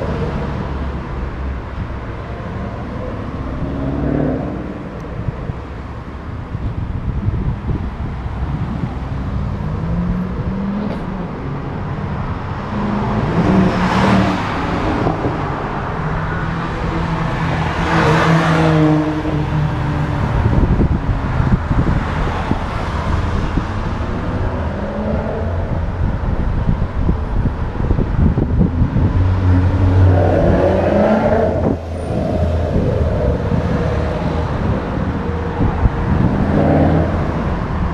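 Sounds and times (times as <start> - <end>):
cars passing at speed: 0.0 - 37.9.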